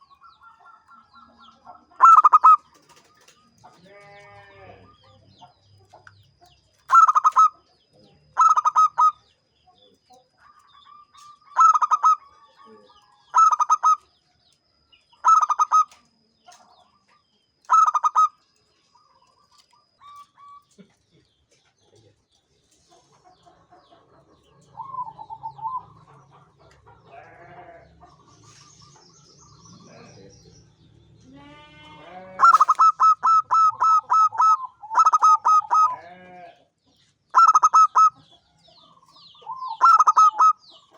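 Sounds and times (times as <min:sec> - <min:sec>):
dove cooing in staccato notes: 0:00.0 - 0:03.4, 0:06.8 - 0:07.7, 0:08.3 - 0:09.2, 0:10.4 - 0:14.1, 0:15.2 - 0:16.0, 0:17.7 - 0:18.4, 0:23.5 - 0:28.9, 0:32.3 - 0:36.0, 0:37.3 - 0:38.3, 0:39.1 - 0:40.9.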